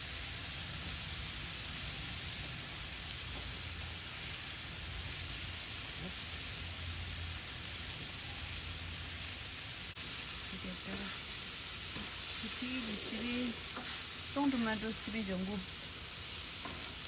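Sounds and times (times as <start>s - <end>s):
vegetables sizzling in a pan: 0.0s - 17.0s.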